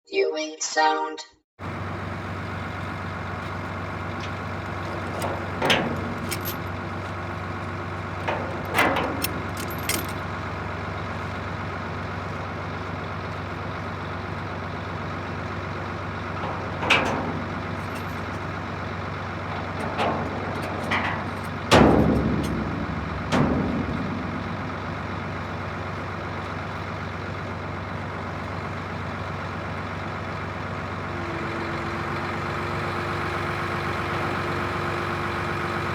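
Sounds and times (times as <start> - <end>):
truck engine idling: 1.6 - 35.9
chains rattling and clanking: 4.2 - 10.4, 15.9 - 26.9.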